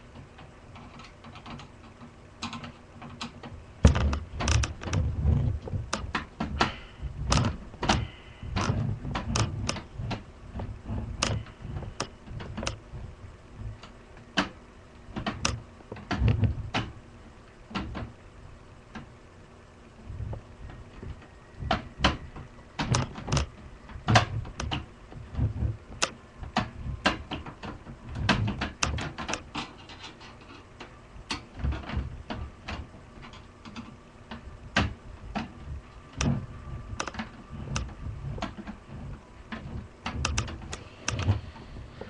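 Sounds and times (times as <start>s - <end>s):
computer case thumps: 3.8s - 12.7s.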